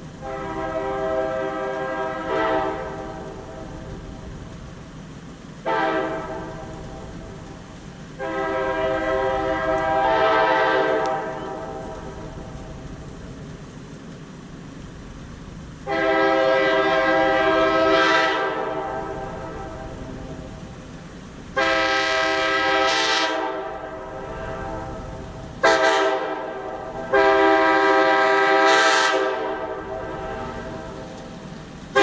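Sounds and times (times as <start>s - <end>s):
horn blasts sounding a chord: 8.2s - 11.9s, 15.9s - 19.9s, 21.6s - 31.0s.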